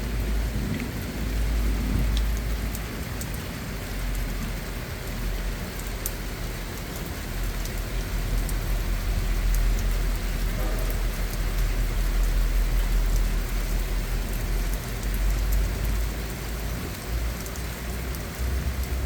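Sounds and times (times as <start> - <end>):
steady rain hiss: 0.0 - 19.0
sharp drip ticks: 0.2 - 19.0.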